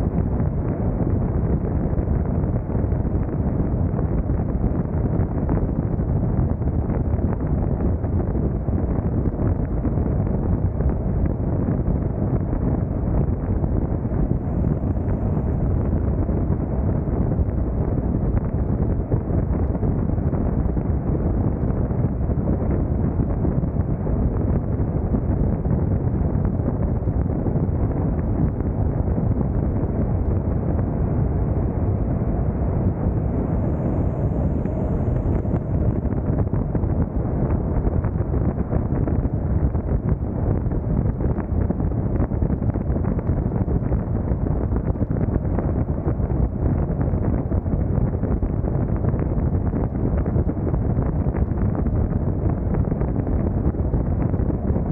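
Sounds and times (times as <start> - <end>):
wind buffeting microphone: 0.0 - 54.9
car tyres rumbling: 29.2 - 38.4.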